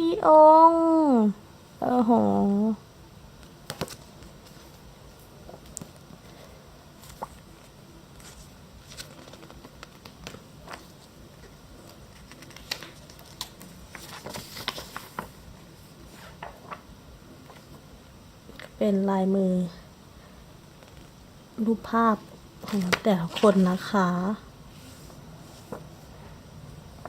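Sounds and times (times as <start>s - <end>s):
paper and plastic rustling: 5.5s - 15.4s, 22.6s - 24.0s, 24.8s - 26.1s.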